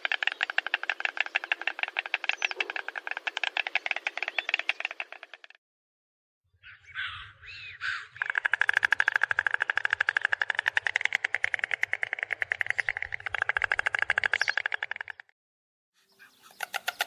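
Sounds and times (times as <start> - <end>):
stork clattering its bill: 0.0 - 5.6, 8.2 - 15.3, 16.4 - 17.0.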